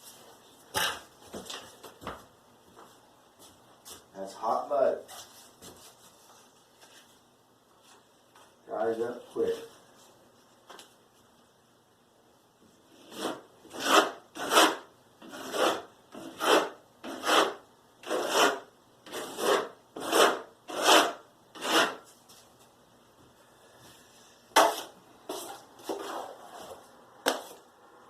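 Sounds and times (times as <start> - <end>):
scraping joint compound: 12.7 - 22.8, 23.8 - 27.7.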